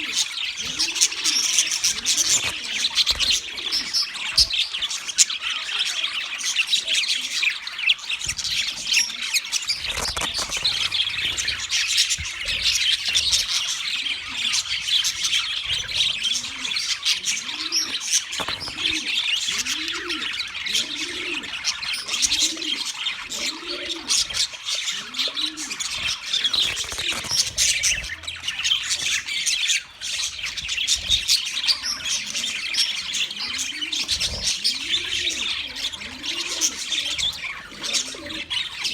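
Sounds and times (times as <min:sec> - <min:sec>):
budgerigars chirping and chattering: 0:00.0 - 0:38.9
low cooing call: 0:16.2 - 0:24.2.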